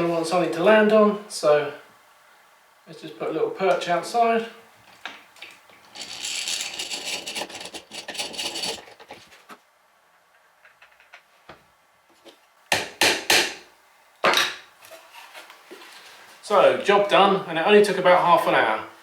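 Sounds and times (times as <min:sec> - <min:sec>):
wood scraping and rubbing: 0:05.8 - 0:09.6.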